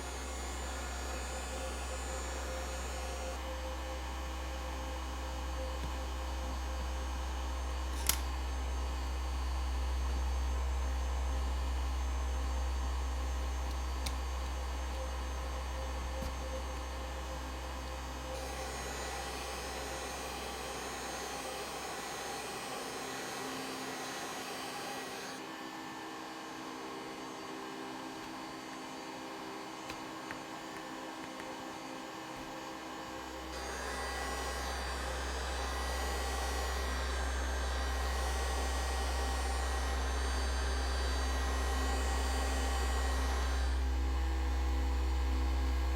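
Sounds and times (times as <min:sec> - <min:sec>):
heat gun blowing: 0:07.9 - 0:08.3, 0:18.2 - 0:25.6, 0:33.5 - 0:43.8.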